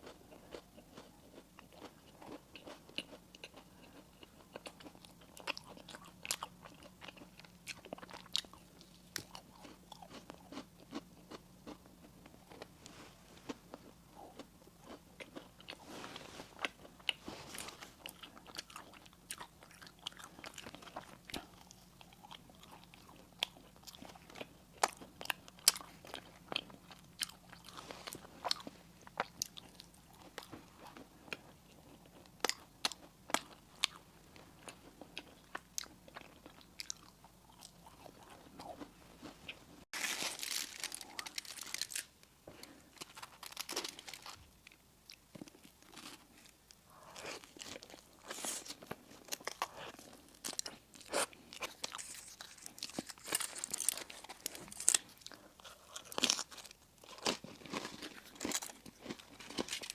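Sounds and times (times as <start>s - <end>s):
person chewing crunchy food: 0.0s - 59.9s.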